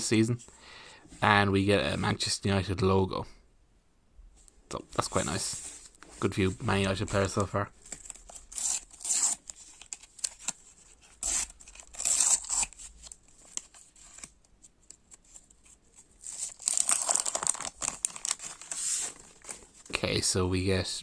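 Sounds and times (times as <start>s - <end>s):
wrapper tearing and crinkling: 7.9s - 14.3s, 16.2s - 19.8s.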